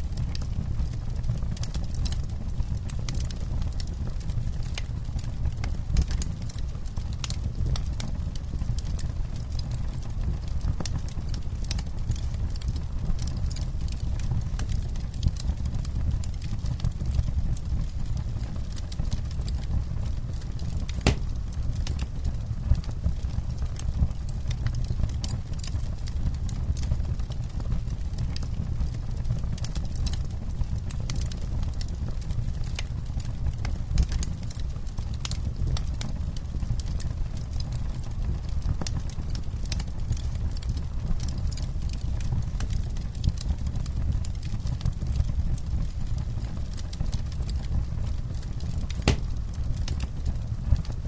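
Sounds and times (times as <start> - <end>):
low fire rumble: 0.0 - 51.0
campfire crackling and popping: 0.1 - 51.0.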